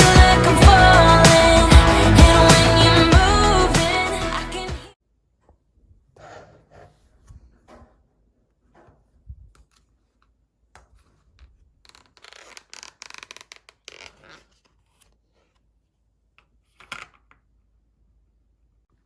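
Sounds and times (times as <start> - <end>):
scratching and rubbing handling: 8.6 - 15.9.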